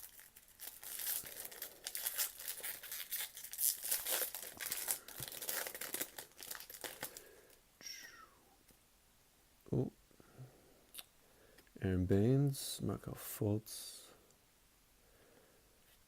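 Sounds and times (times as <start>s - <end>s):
plastic wrapper tearing and crinkling: 0.0s - 7.2s.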